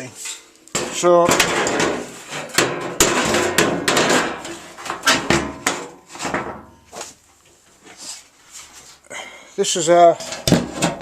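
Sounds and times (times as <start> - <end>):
metal panel clanking and scraping: 0.2 - 6.8, 10.2 - 11.0.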